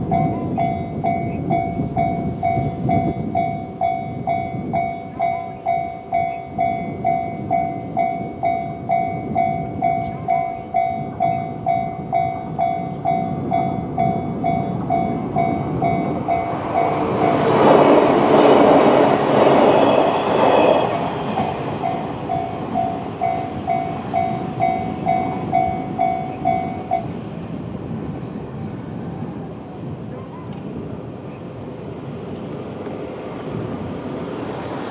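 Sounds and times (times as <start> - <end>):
level crossing warning bell: 0.0 - 27.2
electric train passing: 0.0 - 34.9.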